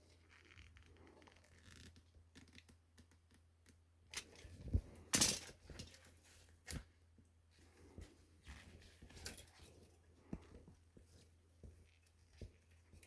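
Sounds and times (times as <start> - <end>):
hands handling tools and parts: 4.1 - 6.9, 8.0 - 13.0.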